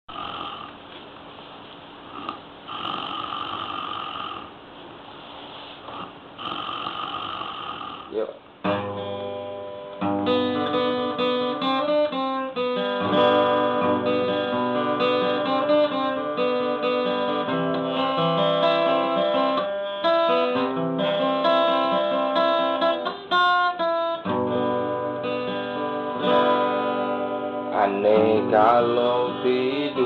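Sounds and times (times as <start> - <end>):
plucked guitar melody: 8.6 - 30.0.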